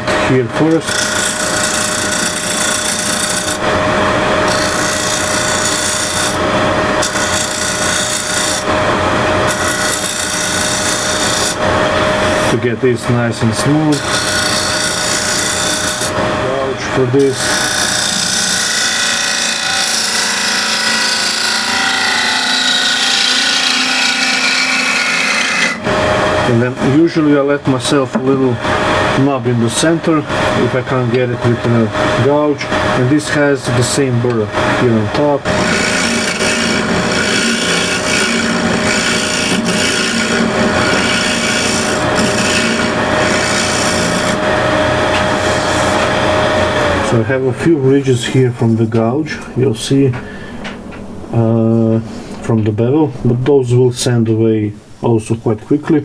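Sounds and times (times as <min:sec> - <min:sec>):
scraper rasping wood: 0:00.0 - 0:12.6, 0:13.6 - 0:25.8, 0:34.6 - 0:47.2
bowl gouge shaving wood on lathe: 0:00.0 - 0:49.1.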